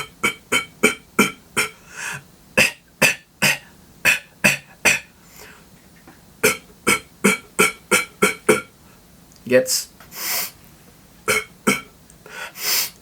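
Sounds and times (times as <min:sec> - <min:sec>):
beatboxed cough snare hits: 0:00.0 - 0:01.8, 0:02.6 - 0:05.1, 0:06.0 - 0:08.7, 0:11.3 - 0:11.9.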